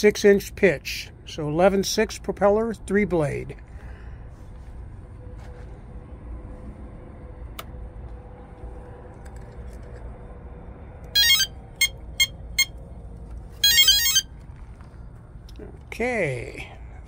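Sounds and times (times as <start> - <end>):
longer motor tone: 11.1 - 12.7
motor musical tone: 11.1 - 12.8, 13.6 - 14.3
short electronic beeps: 11.2 - 12.8, 13.6 - 14.3.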